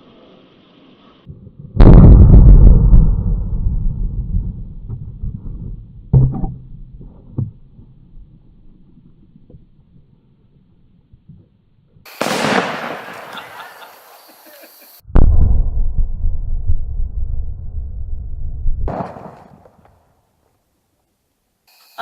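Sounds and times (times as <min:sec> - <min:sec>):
loud rushing hiss: 0:00.0 - 0:01.3, 0:12.1 - 0:15.0, 0:21.7 - 0:22.0
explosion blast with rumble: 0:01.3 - 0:07.4, 0:15.1 - 0:19.6
sharp thumps: 0:01.8 - 0:08.0.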